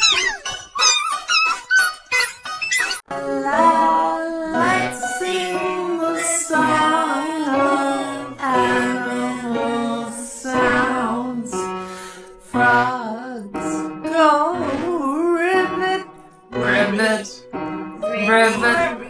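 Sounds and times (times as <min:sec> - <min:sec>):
woman singing children's song: 0:03.2 - 0:11.7, 0:12.4 - 0:17.4, 0:18.0 - 0:19.0.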